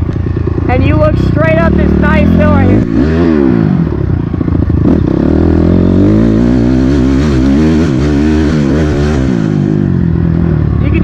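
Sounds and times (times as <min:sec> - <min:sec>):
motocross bike engine revving: 0:00.0 - 0:11.0.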